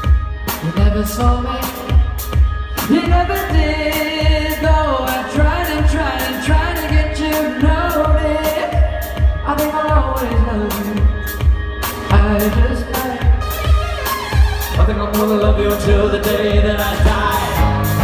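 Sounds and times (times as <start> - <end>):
person singing: 0.0 - 18.0
pop-rock band playing live: 0.0 - 18.0.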